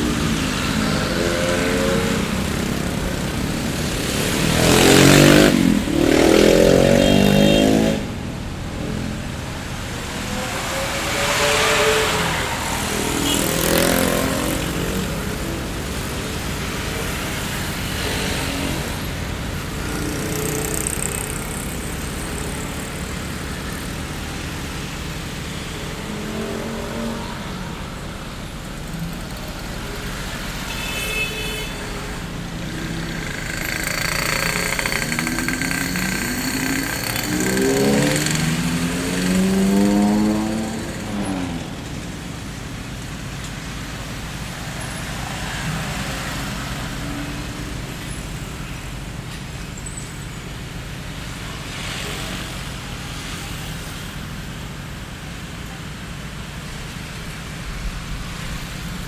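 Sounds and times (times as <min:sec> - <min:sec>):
vehicle pulling away: 0:00.0 - 0:30.7, 0:31.9 - 0:46.9
passing vehicles rumbling: 0:00.0 - 0:59.0.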